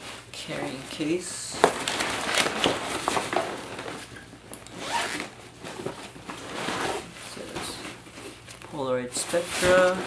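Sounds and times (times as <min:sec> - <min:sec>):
zipper being pulled open: 0:04.8 - 0:05.3.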